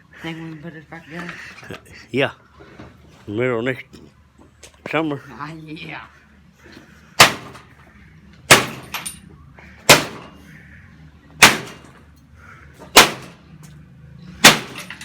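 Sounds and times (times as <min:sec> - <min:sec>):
heavy blows on engine: 0:11.4 - 0:15.0
small metallic clinks: 0:14.8 - 0:15.0.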